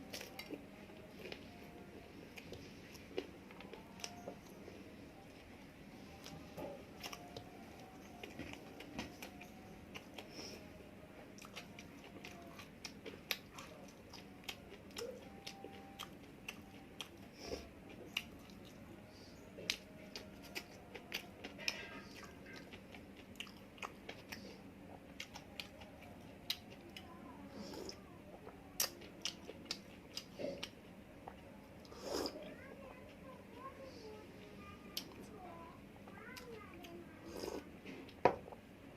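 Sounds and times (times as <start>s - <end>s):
person chewing crunchy food: 6.2s - 10.3s, 19.6s - 32.4s.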